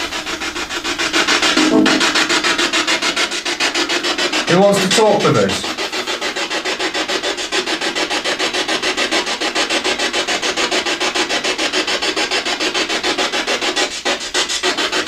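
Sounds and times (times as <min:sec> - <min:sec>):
pulsing radio static: 0:01.6 - 0:02.2.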